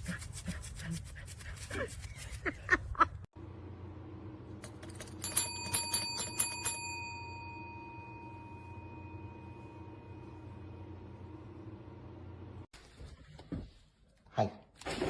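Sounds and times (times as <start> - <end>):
small metal bell ringing: 4.6 - 10.0.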